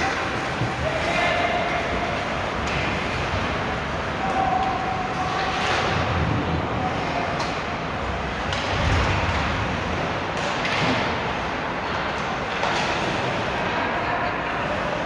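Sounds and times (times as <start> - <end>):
hockey sticks and puck clacking: 0.0 - 6.2, 8.4 - 9.5, 10.2 - 14.0
arena rink noise: 0.0 - 15.0.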